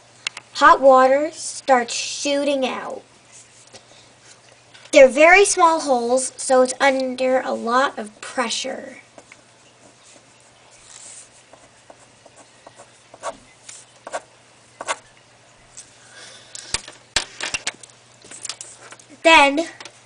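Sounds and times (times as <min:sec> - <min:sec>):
faint steady hum: 0:00.0 - 0:20.0
pen scratching on paper: 0:11.0 - 0:13.4, 0:14.0 - 0:15.0.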